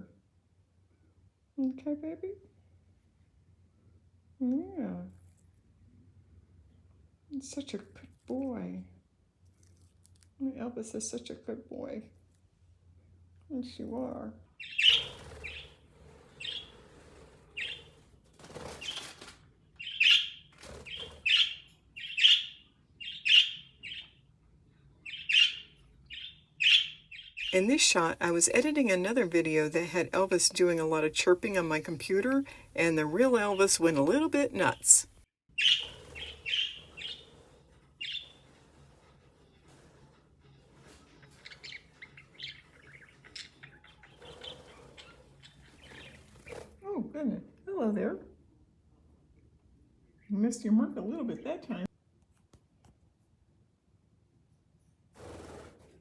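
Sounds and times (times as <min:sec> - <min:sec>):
budgerigar chirping: 0:14.6 - 0:15.7, 0:16.4 - 0:16.7, 0:17.6 - 0:17.8, 0:19.8 - 0:24.2, 0:25.0 - 0:28.0, 0:31.5 - 0:37.3, 0:38.0 - 0:38.3, 0:41.4 - 0:46.3
recorded budgie chirping: 0:14.6 - 0:15.8, 0:16.4 - 0:16.8, 0:17.6 - 0:18.0, 0:19.8 - 0:24.3, 0:24.9 - 0:37.4, 0:38.0 - 0:38.4, 0:41.2 - 0:46.7.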